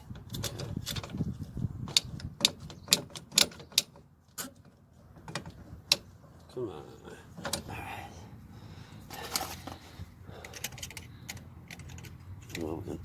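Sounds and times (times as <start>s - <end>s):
low rumbling handling noise: 0.0s - 6.6s
metallic clicks and clinks: 10.4s - 12.9s.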